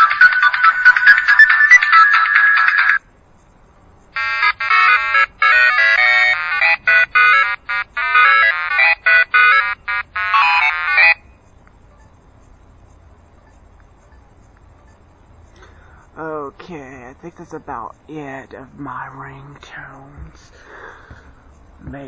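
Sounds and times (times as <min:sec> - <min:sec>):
mobile phone ringtone melody: 0:00.0 - 0:03.0, 0:04.2 - 0:11.4.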